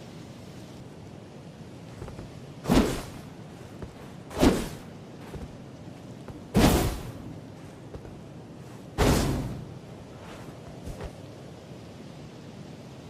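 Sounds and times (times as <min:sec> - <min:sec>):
sword whooshing strokes: 0:02.6 - 0:03.2, 0:04.3 - 0:04.9, 0:06.6 - 0:07.2, 0:09.0 - 0:09.7.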